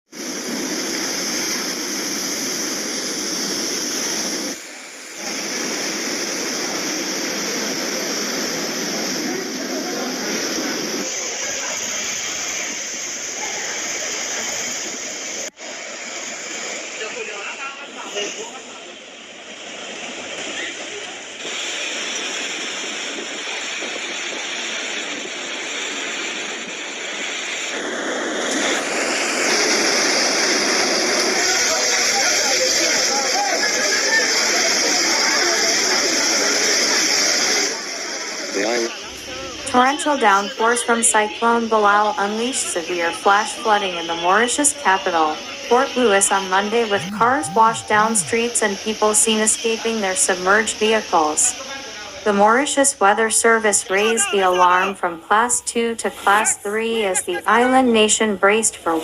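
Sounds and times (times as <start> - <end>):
torrential rain and floodwater rushing: 0.1 - 46.0.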